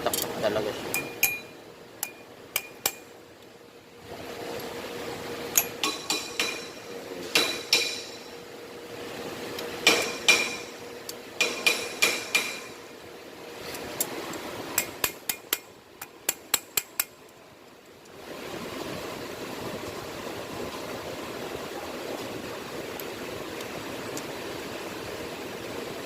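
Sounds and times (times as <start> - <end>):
hammer striking metal: 0.9 - 3.1, 5.5 - 8.3, 9.8 - 10.8, 11.4 - 12.8, 14.8 - 17.2.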